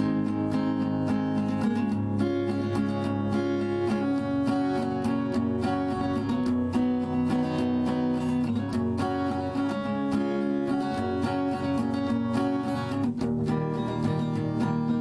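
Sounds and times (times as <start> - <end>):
strummed acoustic guitar: 0.0 - 15.0.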